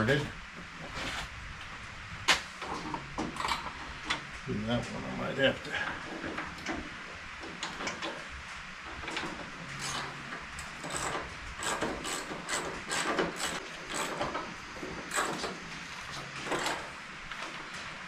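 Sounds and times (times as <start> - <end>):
metal clicks and scrapes of tools: 9.2 - 14.3.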